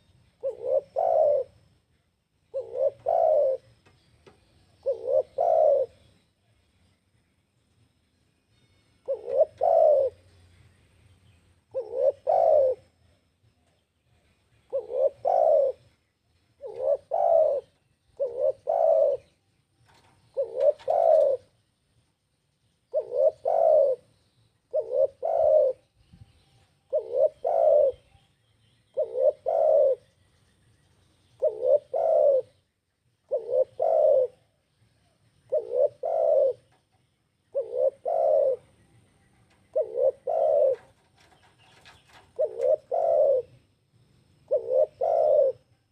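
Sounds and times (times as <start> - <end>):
dove cooing: 0.0 - 1.6, 2.5 - 4.0, 4.7 - 6.2, 9.0 - 10.4, 11.6 - 13.1, 14.2 - 16.0, 16.6 - 21.6, 22.9 - 24.1, 24.7 - 26.0, 26.7 - 28.3, 28.9 - 30.1, 31.3 - 43.7, 44.4 - 45.9.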